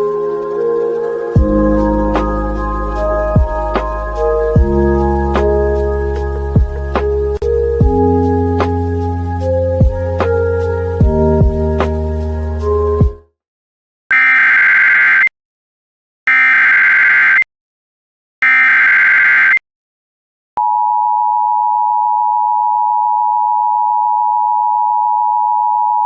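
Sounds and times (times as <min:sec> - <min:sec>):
steady attention tone: 0:00.0 - 0:11.7.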